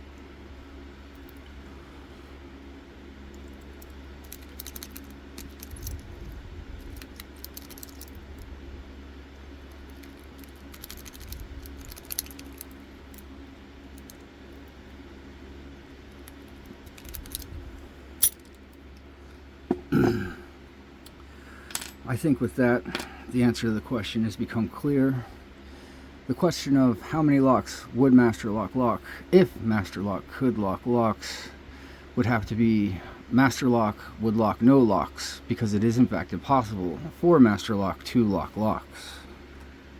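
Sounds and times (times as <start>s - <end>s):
lock picks clicking and scraping: 3.3s - 8.5s, 9.6s - 13.3s, 13.9s - 14.8s, 16.0s - 17.6s, 18.2s - 19.1s.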